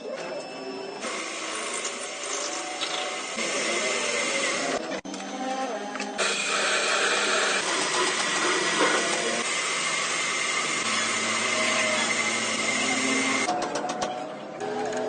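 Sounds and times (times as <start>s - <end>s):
lathe hissing machine noise: 1.0s - 5.0s, 6.2s - 13.5s.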